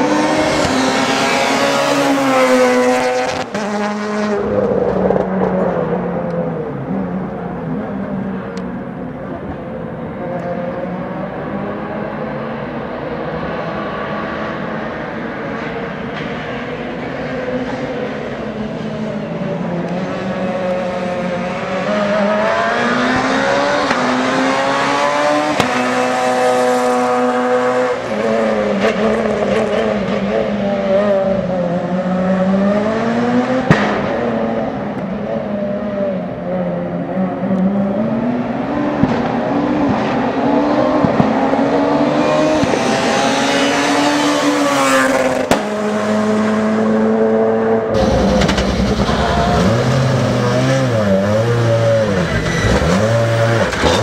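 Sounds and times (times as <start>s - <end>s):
rally car engines revving: 0.0s - 54.0s
sharp crack: 33.6s - 34.3s.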